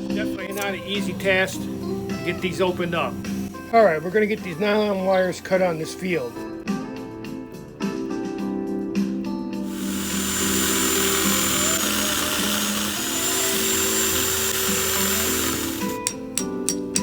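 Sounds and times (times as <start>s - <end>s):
guitar background music: 0.0s - 17.0s
power tool cutting wires: 9.6s - 16.2s.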